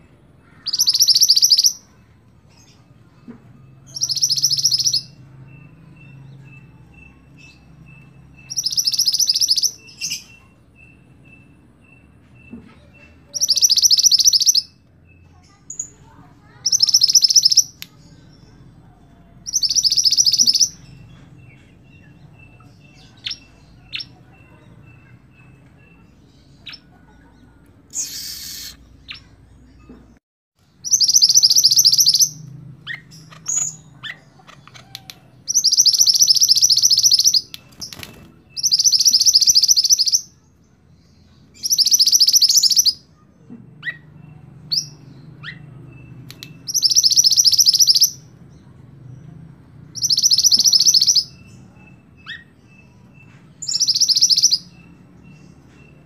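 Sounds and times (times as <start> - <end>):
short high bird chips: 27.9 - 29.3.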